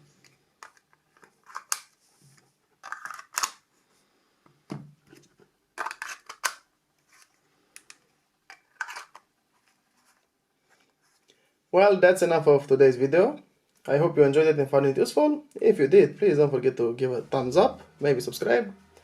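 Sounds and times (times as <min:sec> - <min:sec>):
plastic phone handling clicks: 0:02.9 - 0:03.6.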